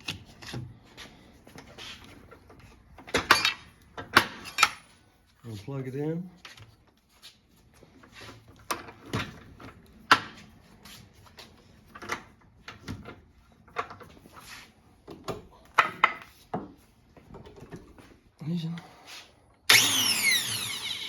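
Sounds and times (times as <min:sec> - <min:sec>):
tool knocks clicks and rattles: 0:02.1 - 0:04.8.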